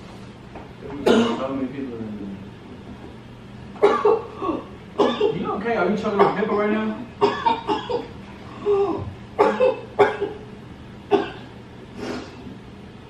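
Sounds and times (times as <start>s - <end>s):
woman coughing: 1.0s - 1.4s, 3.8s - 5.4s, 6.2s - 10.4s, 11.1s - 11.5s.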